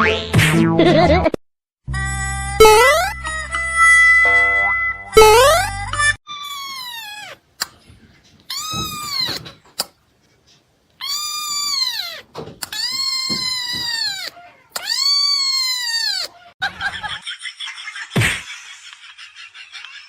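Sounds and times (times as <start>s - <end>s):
cat meowing loudly: 6.4s - 7.4s, 8.5s - 9.5s, 11.0s - 16.5s.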